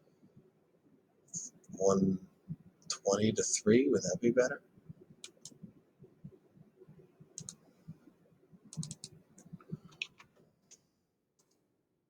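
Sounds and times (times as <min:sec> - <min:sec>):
mouse clicks: 0:05.2 - 0:05.6, 0:07.4 - 0:07.6, 0:08.7 - 0:10.8
keyboard keys clicking: 0:07.4 - 0:07.6, 0:08.7 - 0:10.3.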